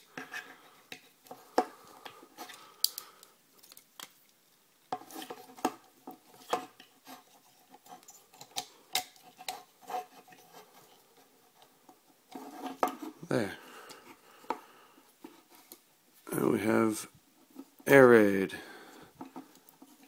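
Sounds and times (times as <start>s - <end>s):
plastic pieces rubbing and scraping: 0.0s - 13.5s
plastic toy parts clicking and snapping: 2.8s - 4.2s.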